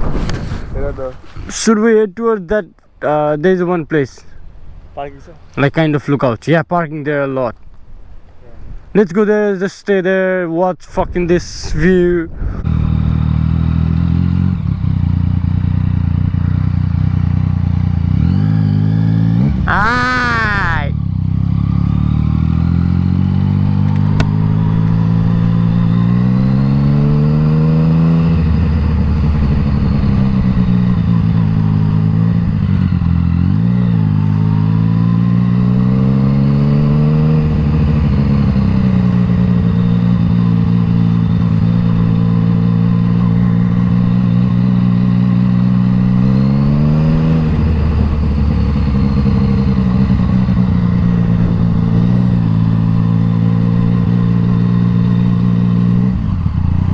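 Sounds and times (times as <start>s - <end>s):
motorcycle engine accelerating: 12.6s - 56.9s.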